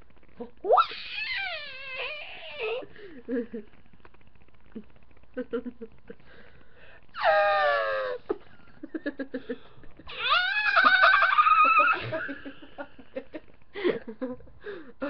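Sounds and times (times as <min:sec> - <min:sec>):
person making high-pitched cries: 0:00.7 - 0:02.9, 0:10.1 - 0:12.0
person giggling softly: 0:04.7 - 0:06.5, 0:12.0 - 0:15.0.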